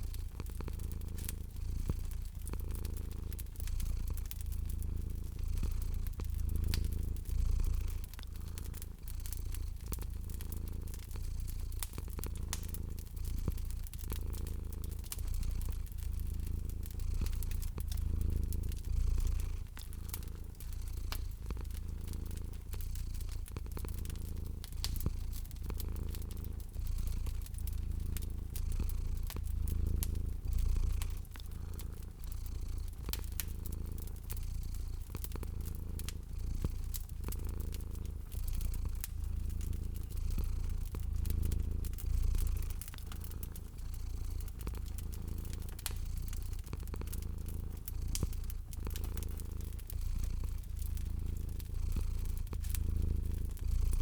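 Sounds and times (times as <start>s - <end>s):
cat purring: 0.0s - 54.0s
wood fire crackling: 0.0s - 54.0s.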